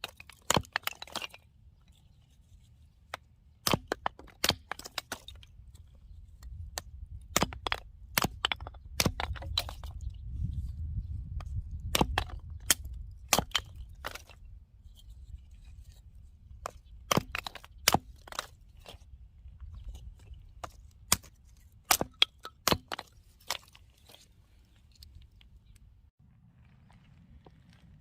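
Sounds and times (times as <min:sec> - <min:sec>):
axe splitting wood: 0:00.0 - 0:01.4, 0:03.6 - 0:05.4, 0:06.8 - 0:09.9, 0:11.8 - 0:14.3, 0:16.6 - 0:19.0, 0:20.6 - 0:24.2.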